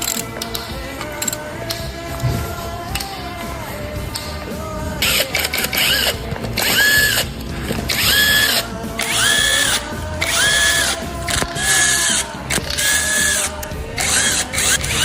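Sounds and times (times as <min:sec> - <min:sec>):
power drill whirring in bursts: 0:05.0 - 0:07.2, 0:07.9 - 0:15.0.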